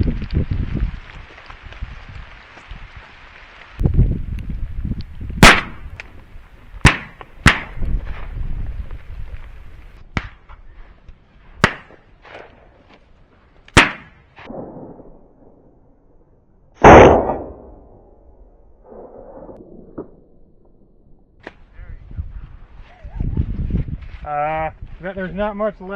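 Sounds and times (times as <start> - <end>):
hiss of rain or wind: 0.0 - 13.8
shotgun shots: 5.4 - 5.8, 6.8 - 7.8, 11.6 - 12.0, 13.8 - 15.1, 16.8 - 18.0.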